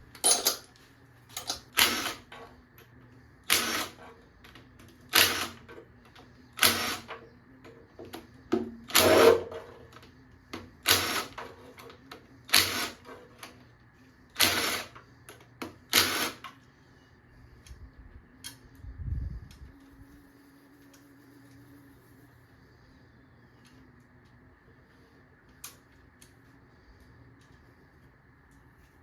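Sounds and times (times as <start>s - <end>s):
wrench rattling bolts off: 0.2s - 0.7s.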